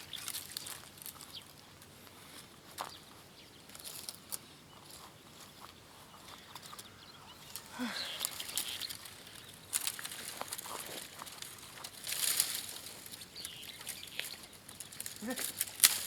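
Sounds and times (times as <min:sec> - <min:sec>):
twigs rustling: 0:00.0 - 0:05.5, 0:06.1 - 0:16.0
twigs snapping: 0:07.5 - 0:16.0.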